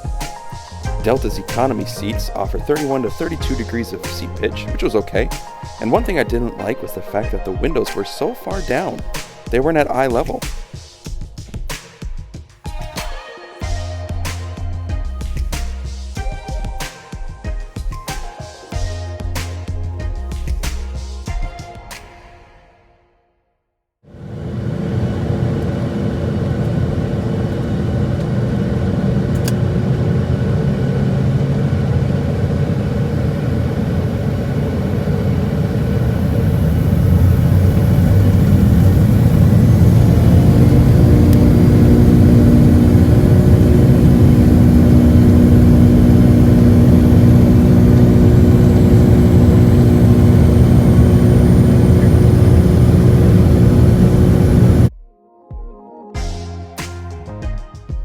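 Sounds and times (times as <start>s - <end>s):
airplane cabin engine noise: 0.0s - 7.6s, 24.1s - 54.9s
steady drone: 0.0s - 7.6s, 30.0s - 54.9s
deep rumble: 0.8s - 2.7s, 30.0s - 54.9s.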